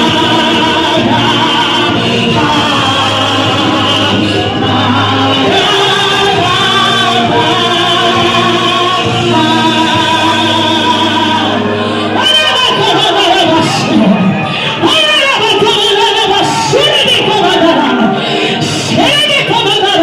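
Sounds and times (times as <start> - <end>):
low musical accompaniment: 0.0 - 15.0
group singing in harmony: 0.0 - 20.0.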